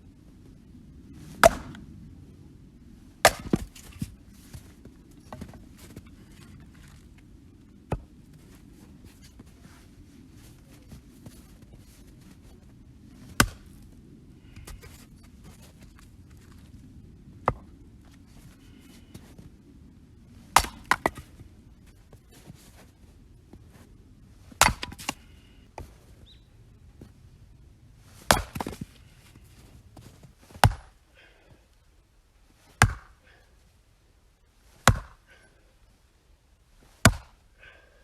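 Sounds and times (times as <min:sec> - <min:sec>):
axe chopping logs: 0:01.4 - 0:01.8, 0:03.2 - 0:04.1, 0:13.3 - 0:13.7, 0:17.4 - 0:17.7, 0:20.5 - 0:21.3, 0:24.5 - 0:25.9, 0:28.2 - 0:28.9, 0:30.5 - 0:31.0, 0:32.8 - 0:33.2, 0:34.8 - 0:35.2, 0:37.0 - 0:37.4.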